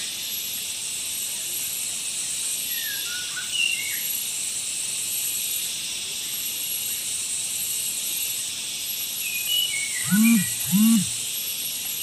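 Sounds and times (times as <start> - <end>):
high-pitched outdoor hiss: 0.0 - 12.0
whistled bird notes: 9.5 - 11.2.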